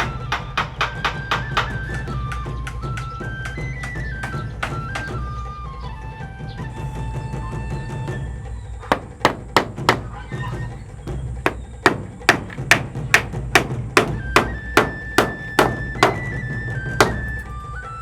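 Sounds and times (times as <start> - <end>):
background music: 0.0 - 18.0
hammer blows: 8.8 - 17.6.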